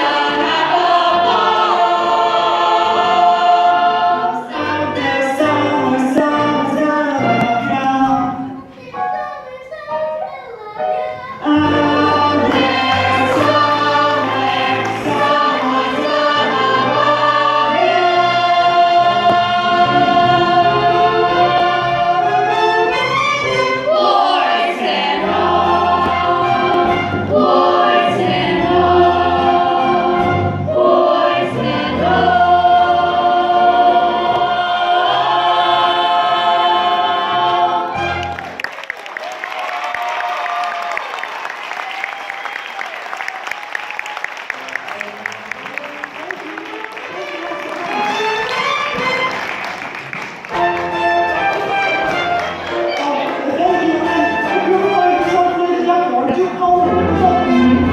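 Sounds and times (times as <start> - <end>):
group of voices singing: 0.0 - 8.6, 11.3 - 38.6, 50.9 - 57.9
instrumental accompaniment: 0.0 - 38.6, 44.5 - 57.9.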